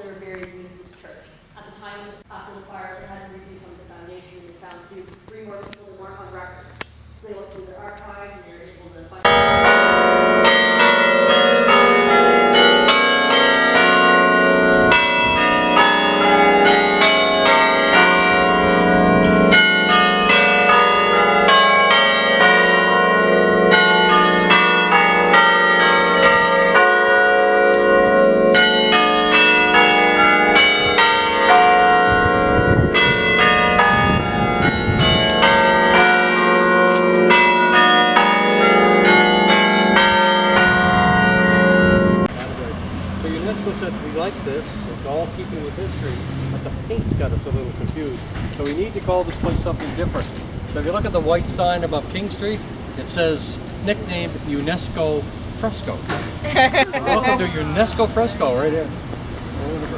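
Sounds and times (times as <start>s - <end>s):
church bells ringing: 7.3s - 56.1s.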